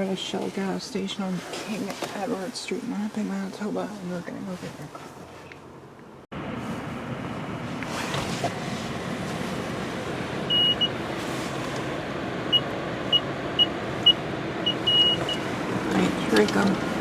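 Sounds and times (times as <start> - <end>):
car engine running: 5.1 - 17.0.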